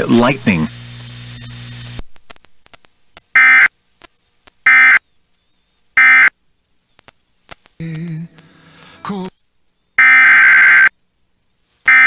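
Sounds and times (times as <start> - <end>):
low steady hum: 7.7 - 10.0.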